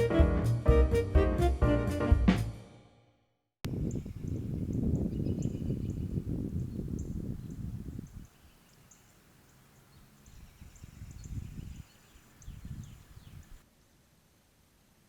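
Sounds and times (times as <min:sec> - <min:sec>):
low rumble on microphone: 0:03.7 - 0:08.3
small birds chirping: 0:03.7 - 0:13.7.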